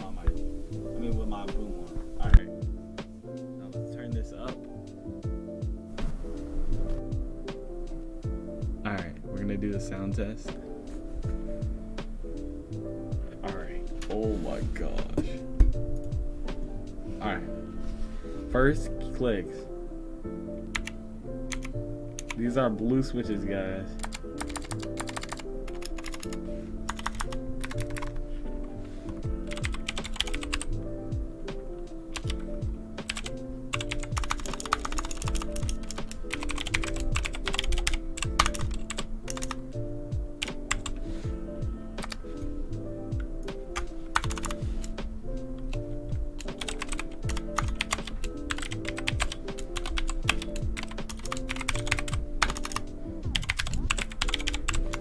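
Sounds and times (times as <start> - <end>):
background music with deep bass beat: 0.0 - 55.0
clicky mechanical keyboard typing: 20.8 - 22.4, 24.0 - 28.2, 29.5 - 30.7, 33.0 - 39.6, 46.4 - 54.9.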